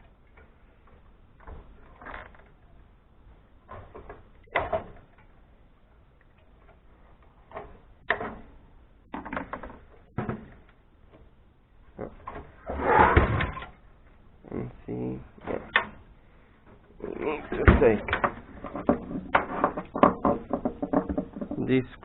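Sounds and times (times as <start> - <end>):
metal parts knocking and rattling: 17.6 - 21.9.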